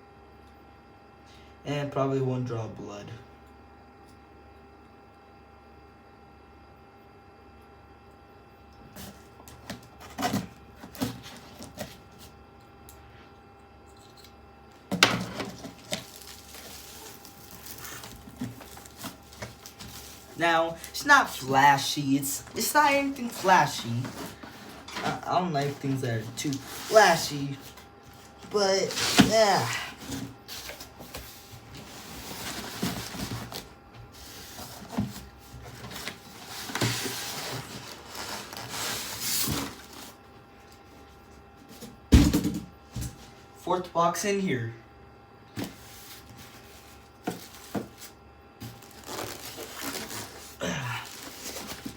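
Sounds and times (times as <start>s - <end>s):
packaging rustling: 9.0s - 12.3s, 14.9s - 40.2s, 45.6s - 51.9s.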